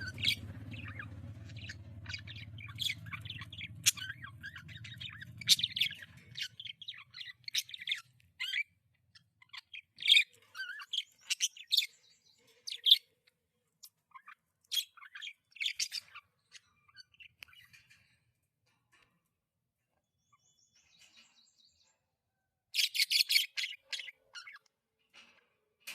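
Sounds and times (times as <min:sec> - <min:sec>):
low hum: 0:00.0 - 0:07.2
budgerigar chirping: 0:00.0 - 0:12.0, 0:12.6 - 0:13.1, 0:13.8 - 0:17.8, 0:22.8 - 0:24.7.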